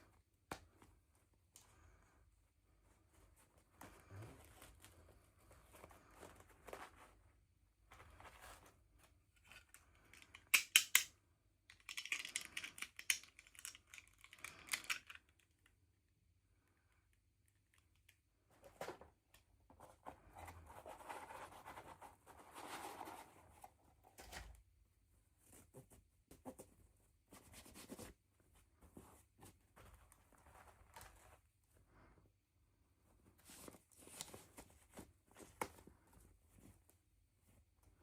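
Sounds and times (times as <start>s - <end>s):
soft handling noises: 0.0s - 10.6s, 11.6s - 38.0s
sharp plastic clicks: 10.2s - 15.3s.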